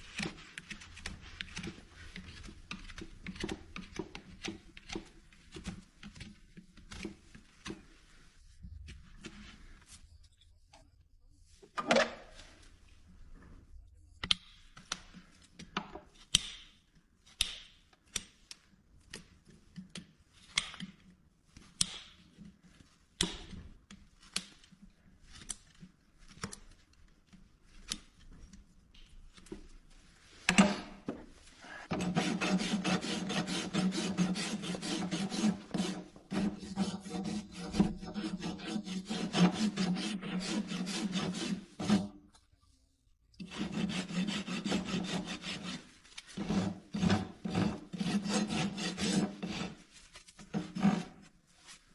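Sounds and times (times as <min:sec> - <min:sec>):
rasp filing a hoof: 0:31.6 - 0:42.2, 0:43.4 - 0:51.2.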